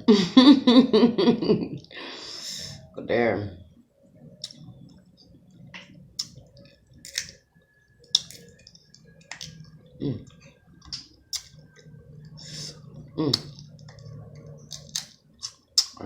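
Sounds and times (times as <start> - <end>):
wet mouth clicks and smacks: 4.4 - 5.0, 5.7 - 7.4, 8.0 - 9.6, 10.8 - 11.9, 14.7 - 16.0.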